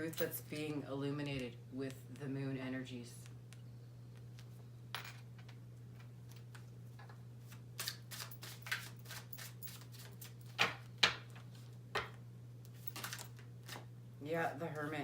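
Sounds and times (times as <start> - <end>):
low hum: 0.0 - 7.5
cards being shuffled: 7.4 - 10.7, 12.7 - 13.9.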